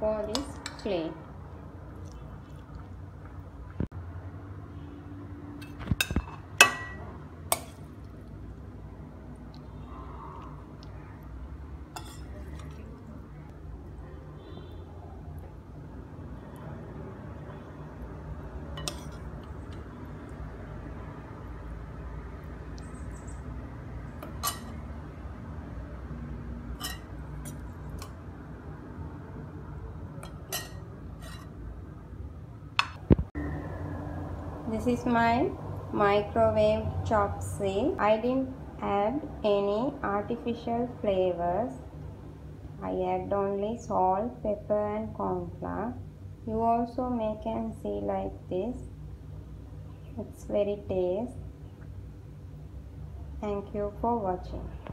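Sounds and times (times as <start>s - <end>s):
low steady hum: 0.0s - 54.9s
dishware clinking: 5.6s - 7.8s, 30.2s - 31.5s
utensil clinking against dish: 24.2s - 24.8s, 26.8s - 28.2s, 30.2s - 31.5s.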